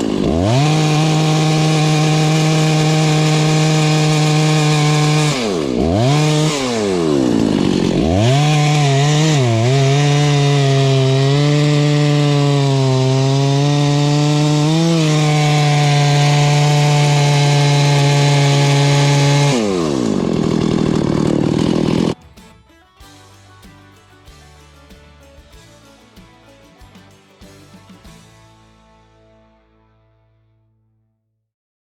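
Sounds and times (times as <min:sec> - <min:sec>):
chainsaw running: 0:00.0 - 0:28.8.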